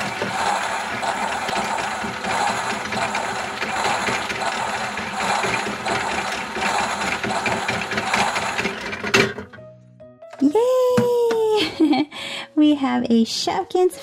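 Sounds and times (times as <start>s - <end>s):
machine stopping click: 0.0s - 9.4s
toy washing machine motor: 0.0s - 9.5s
toys rattling in drum: 0.0s - 9.6s.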